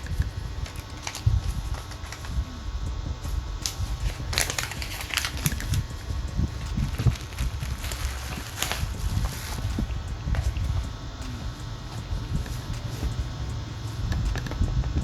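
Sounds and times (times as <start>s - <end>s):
low handling rumble: 0.0s - 15.0s
packaging crinkling: 0.6s - 2.4s, 3.6s - 5.8s, 6.8s - 10.6s.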